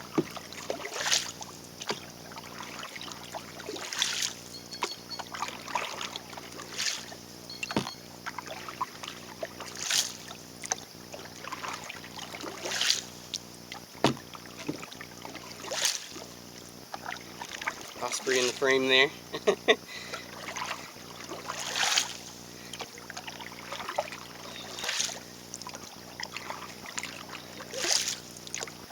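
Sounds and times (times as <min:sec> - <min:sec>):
paddle knocking against hull: 0:00.0 - 0:06.8, 0:07.6 - 0:09.8, 0:13.9 - 0:15.8
paddle strokes swishing through water: 0:00.0 - 0:28.9.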